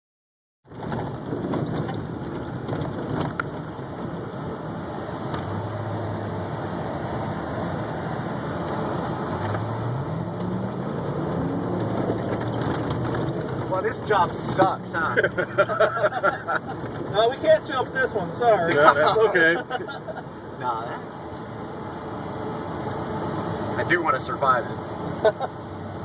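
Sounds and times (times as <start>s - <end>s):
road and body noise: 0.6s - 26.0s
knocks and rattles: 0.7s - 4.0s, 10.5s - 15.1s.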